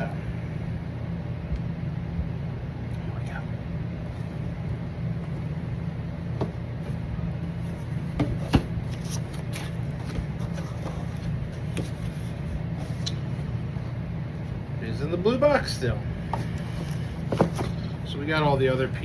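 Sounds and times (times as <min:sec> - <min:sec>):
cardboard box being handled: 0:06.3 - 0:13.6, 0:16.4 - 0:18.1.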